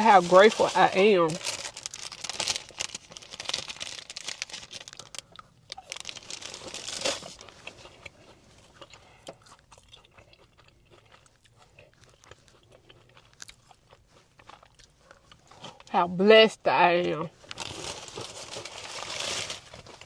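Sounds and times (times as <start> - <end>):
chewing food: 4.6 - 16.0.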